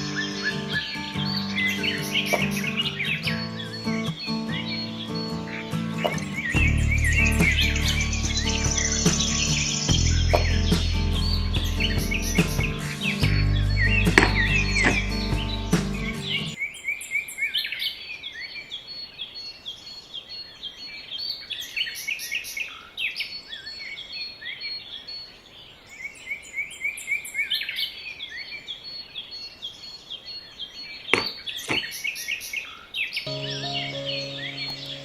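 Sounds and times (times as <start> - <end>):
small birds chirping: 0.0 - 35.0.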